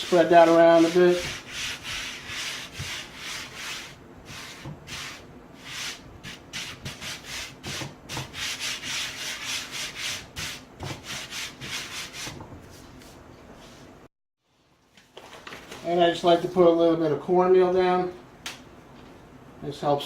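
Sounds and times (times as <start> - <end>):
hand rubbing flour on wood: 0.0 - 13.8.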